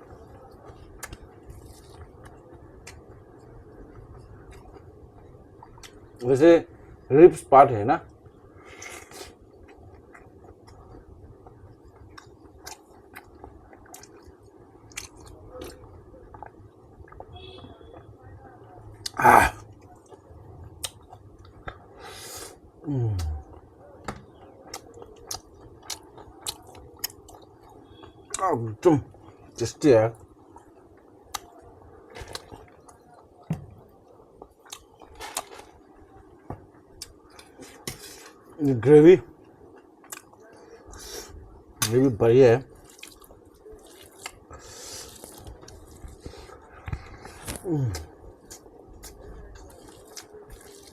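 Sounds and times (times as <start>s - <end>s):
person chewing meat: 0.6s - 3.2s, 8.6s - 18.1s, 19.0s - 23.8s, 24.4s - 28.4s, 30.3s - 36.0s, 39.4s - 41.9s, 42.7s - 50.9s.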